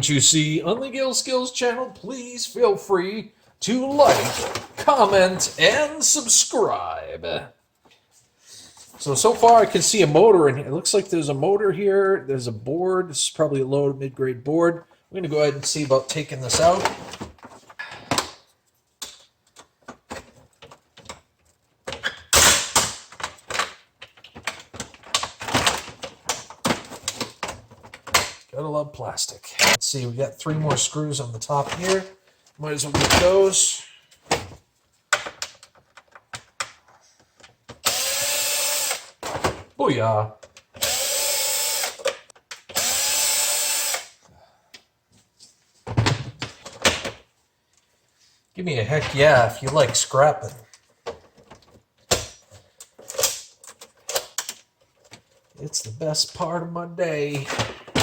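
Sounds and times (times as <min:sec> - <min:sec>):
plastic parts knocking and rattling: 0:03.9 - 0:05.8, 0:16.4 - 0:28.5, 0:34.2 - 0:37.8, 0:45.8 - 0:47.3, 0:48.9 - 0:56.5, 0:57.3 - 0:58.0
power drill spinning: 0:37.8 - 0:39.2, 0:40.8 - 0:42.1, 0:42.7 - 0:44.2
hard plastic parts clicking: 0:49.6 - 0:55.6.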